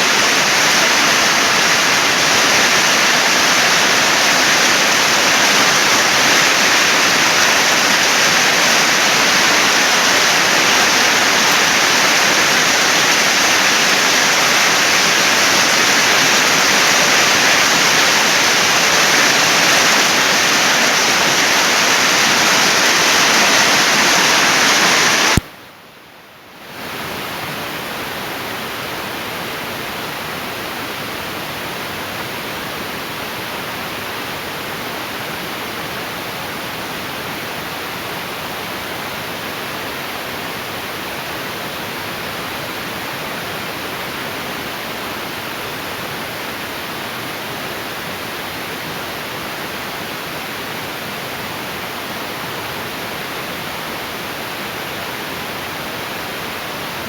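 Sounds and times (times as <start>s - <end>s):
heavy rain pouring: 0.0s - 25.4s.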